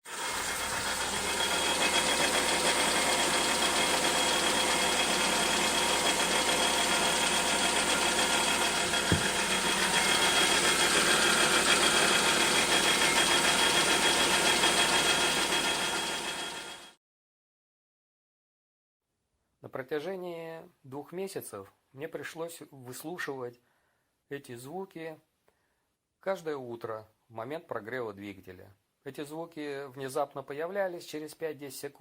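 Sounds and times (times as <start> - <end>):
car engine idling: 0.2 - 16.6
rattling knock under hood: 8.7 - 10.4.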